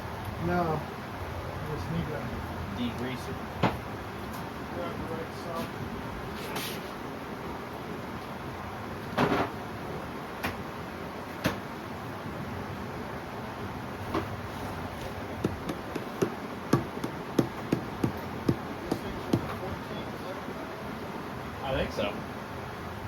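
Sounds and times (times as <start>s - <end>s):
hand tools clicking and knocking: 15.4s - 19.6s.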